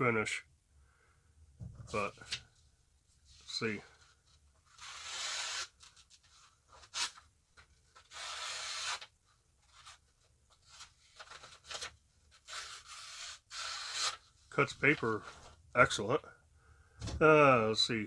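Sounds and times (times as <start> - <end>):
knife slicing paper: 12.5 - 14.2.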